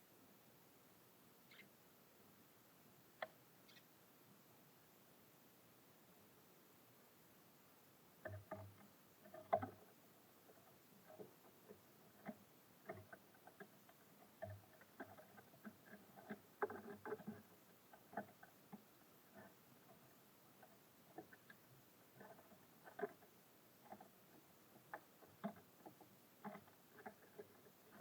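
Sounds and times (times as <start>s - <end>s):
birds pecking and scratching: 8.2s - 28.0s.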